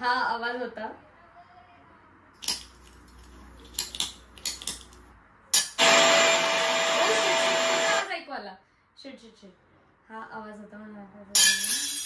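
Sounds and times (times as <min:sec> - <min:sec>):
loud whirring with hum: 0:05.8 - 0:08.1
ceramic plate smashing: 0:11.4 - 0:12.0.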